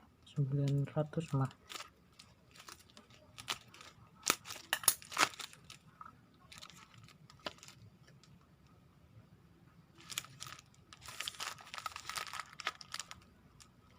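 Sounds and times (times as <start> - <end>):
packaging crinkling: 1.2 - 7.9, 10.0 - 13.9.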